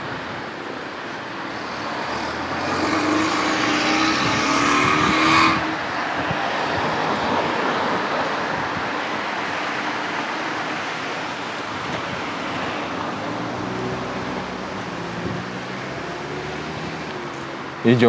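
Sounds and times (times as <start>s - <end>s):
street noise hiss: 0.0s - 18.0s
car driving past: 1.6s - 9.8s.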